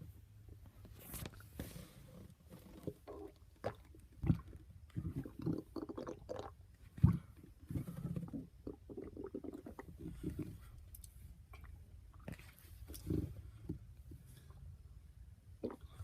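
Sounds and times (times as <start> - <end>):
wet gurgles and clicks: 2.5 - 14.1.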